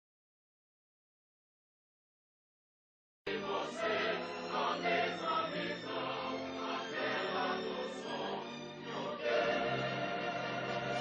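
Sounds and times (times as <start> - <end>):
choir singing held chords: 3.3 - 11.0.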